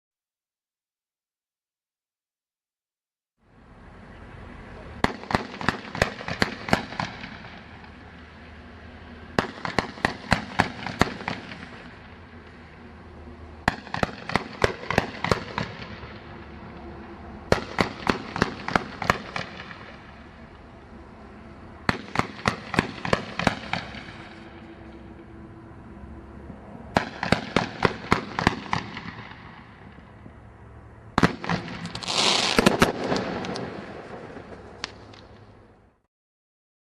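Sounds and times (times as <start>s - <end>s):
firework barrage bangs: 5.0s - 7.9s, 9.3s - 12.0s, 17.5s - 20.1s, 21.8s - 24.3s, 26.9s - 29.9s, 31.2s - 35.0s.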